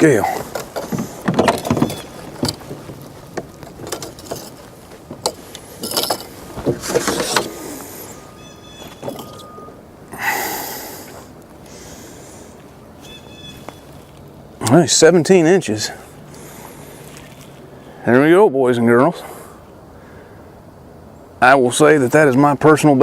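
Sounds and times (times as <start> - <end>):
fishing gear knocks and rustles: 0.0 - 7.9, 8.8 - 9.6.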